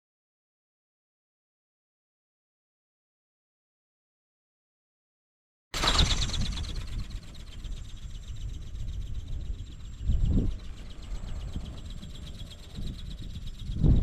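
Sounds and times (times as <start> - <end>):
flapping wings: 5.8 - 14.0
wind buffeting microphone: 5.8 - 14.0.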